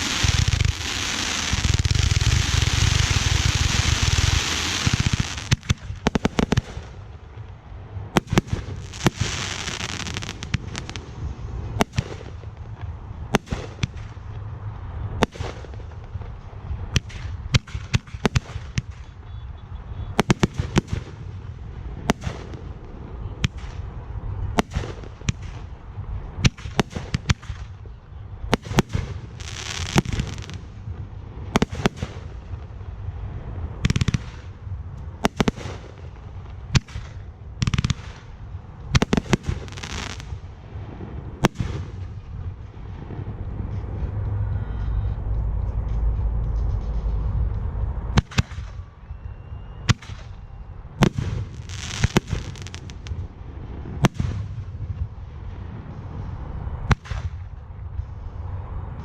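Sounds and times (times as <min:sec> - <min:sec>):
hissing crackling firework bursts: 0:00.0 - 0:07.1, 0:08.2 - 0:12.8, 0:28.6 - 0:30.8, 0:35.2 - 0:42.2, 0:51.0 - 0:54.7
low rumble: 0:00.0 - 0:18.0, 0:38.2 - 0:59.0.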